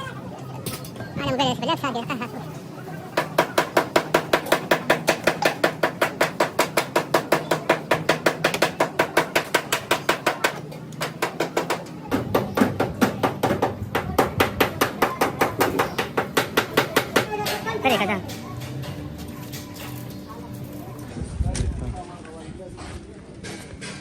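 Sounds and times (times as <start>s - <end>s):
rapid hammer strikes: 3.2s - 17.6s.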